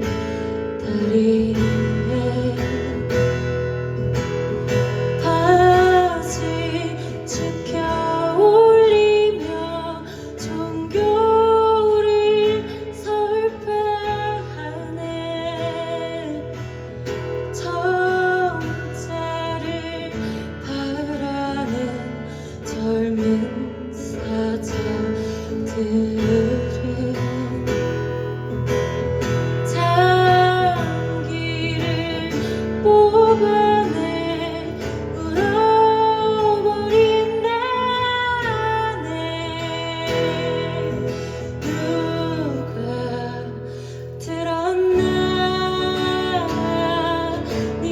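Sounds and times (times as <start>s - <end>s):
strummed acoustic guitar: 0.0s - 47.9s
person singing: 29.6s - 47.9s.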